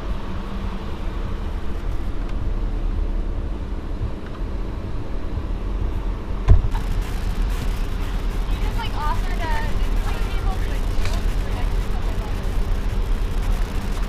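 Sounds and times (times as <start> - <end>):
car engine and tyres rumbling: 0.0 - 14.0
sharp low thump: 6.4 - 8.0.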